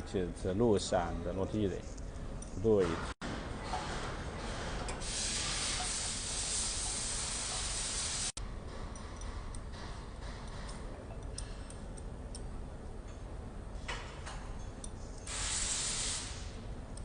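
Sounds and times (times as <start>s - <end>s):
steady hiss: 5.0s - 8.4s, 15.3s - 16.7s
tools clicking on metal parts: 8.8s - 13.3s, 13.9s - 15.4s.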